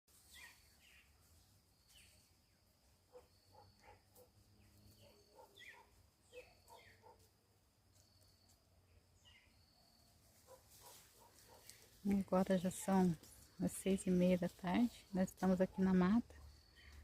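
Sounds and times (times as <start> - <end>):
birds chirping: 1.8 - 7.2, 8.2 - 10.6.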